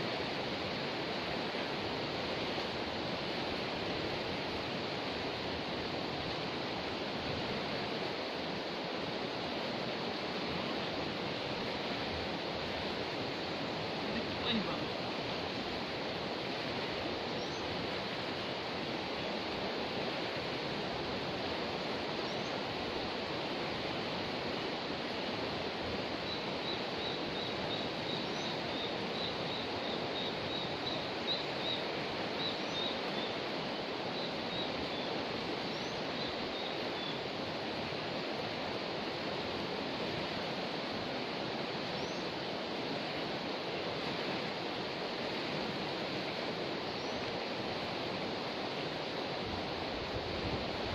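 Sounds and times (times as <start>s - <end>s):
river rushing: 0.0s - 50.9s.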